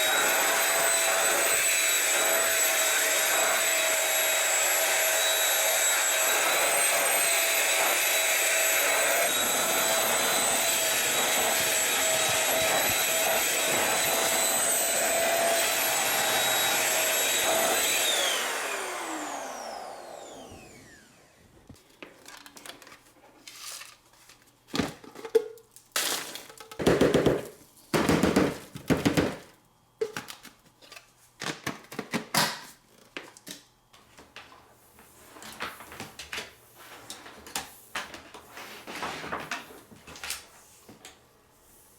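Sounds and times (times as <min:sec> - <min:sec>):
vacuum motor whine: 0:00.0 - 0:21.7.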